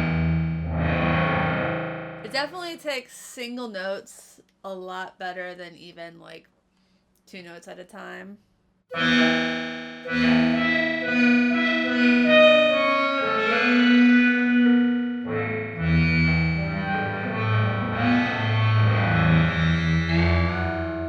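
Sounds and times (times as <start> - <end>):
deep low tones: 0.0 - 2.3, 8.9 - 21.0
electric guitar notes ringing: 0.0 - 2.4, 8.9 - 21.0.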